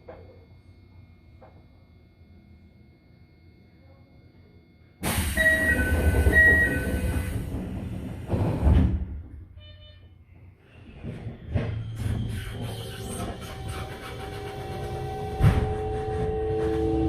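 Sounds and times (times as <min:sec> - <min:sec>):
train low rumble: 0:05.0 - 0:17.0
short beep: 0:05.2 - 0:07.3, 0:09.6 - 0:10.1
sliding doors thumping shut: 0:06.0 - 0:09.2, 0:15.3 - 0:16.4.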